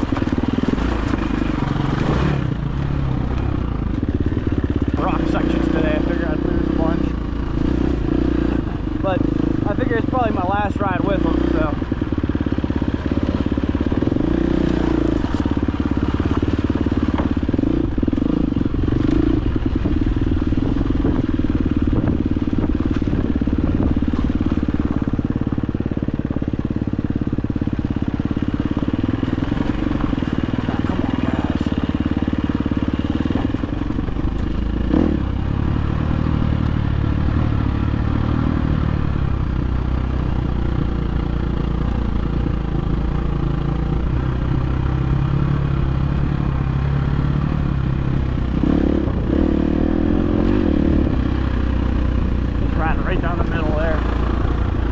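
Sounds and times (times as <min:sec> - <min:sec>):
dirt bike engine revving: 0:00.0 - 0:54.9.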